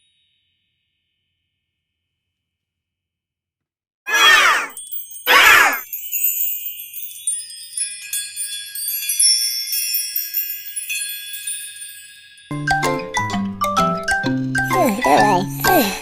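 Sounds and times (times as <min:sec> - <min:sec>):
falling pitch cartoon sounds: 0:04.1 - 0:05.8
high tinkling chime shimmer: 0:04.2 - 0:12.7.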